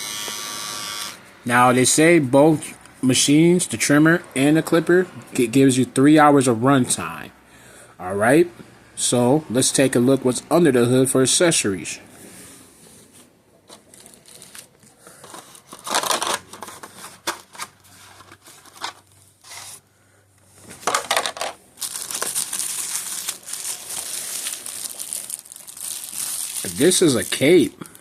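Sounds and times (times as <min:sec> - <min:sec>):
plastic wrapping crinkling: 0:13.7 - 0:19.3, 0:20.8 - 0:28.0.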